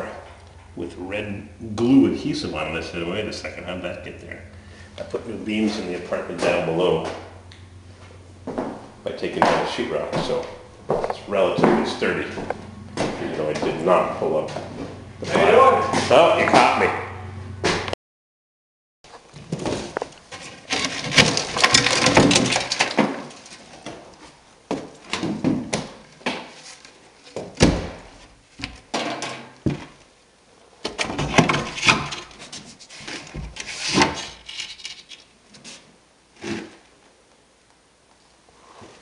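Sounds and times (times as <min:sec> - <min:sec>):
wood rasping and scraping: 0:31.5 - 0:36.8.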